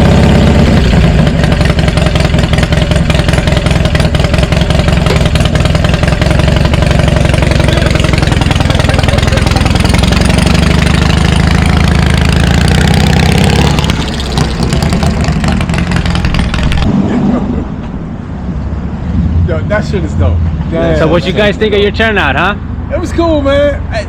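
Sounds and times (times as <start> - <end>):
motorcycle engine running: 0.0 - 17.1.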